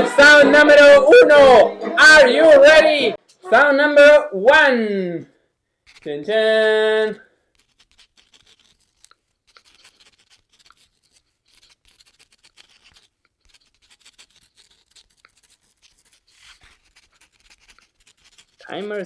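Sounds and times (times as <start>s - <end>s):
pen scratching while writing: 5.9s - 6.2s, 7.4s - 19.0s.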